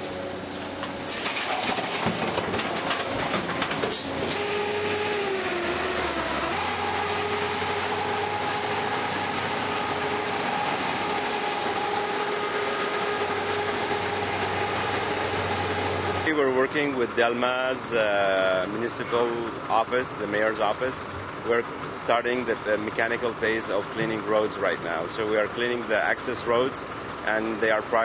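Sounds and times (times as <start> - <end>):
machine droning whine: 0.0 - 28.0
rubble clattering and scraping: 0.5 - 4.4.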